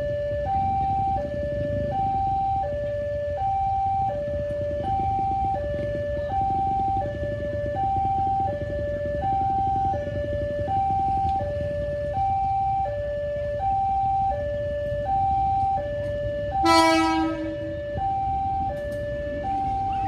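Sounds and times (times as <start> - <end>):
constant low rumble: 0.0 - 20.0
two-tone electronic warning alarm: 0.0 - 20.0
horn blast: 16.6 - 17.8.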